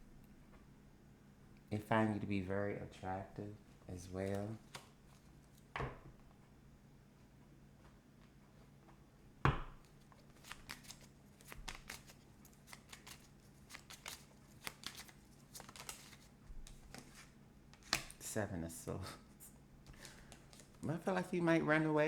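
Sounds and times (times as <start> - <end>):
cards snapping and rustling: 4.2 - 5.7, 9.8 - 18.2, 19.9 - 20.8.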